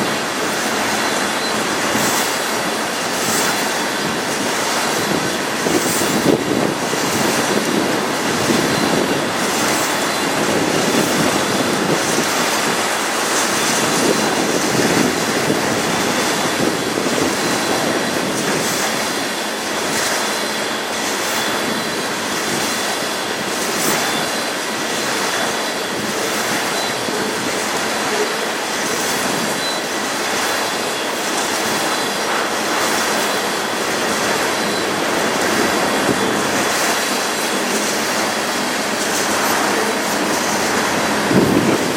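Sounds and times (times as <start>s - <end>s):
train wheels clicking over rail joints: 0.0s - 41.9s
high wheel squeal: 8.4s - 15.2s, 20.3s - 41.6s.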